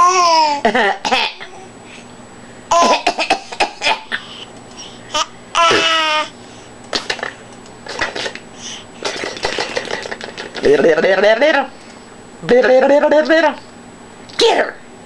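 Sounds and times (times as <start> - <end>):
baby babbling: 5.1 - 6.3.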